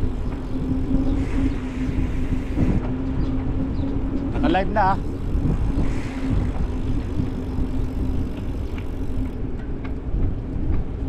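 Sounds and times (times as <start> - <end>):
passing vehicle engine hum: 0.0 - 9.8
low road rumble: 0.0 - 11.0.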